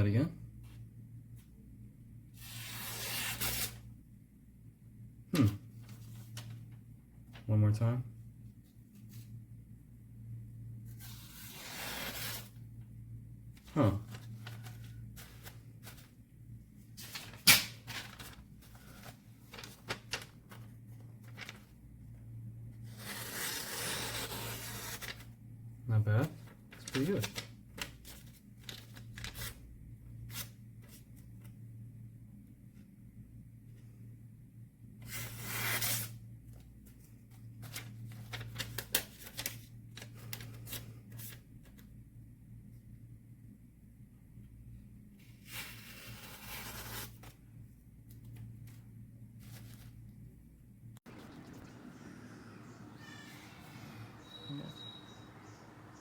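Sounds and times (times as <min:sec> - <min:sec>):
paper rustling: 0:13.6 - 0:16.2, 0:16.9 - 0:21.8, 0:26.3 - 0:29.7, 0:35.1 - 0:41.9, 0:48.0 - 0:50.2.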